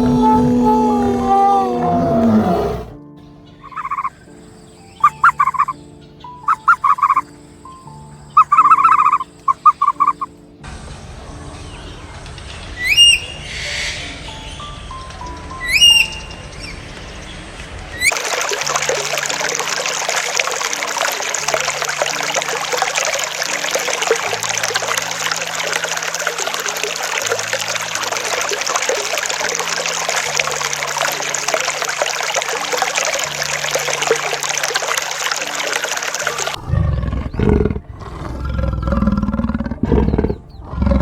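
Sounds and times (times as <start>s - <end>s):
water trickling: 17.9s - 41.0s.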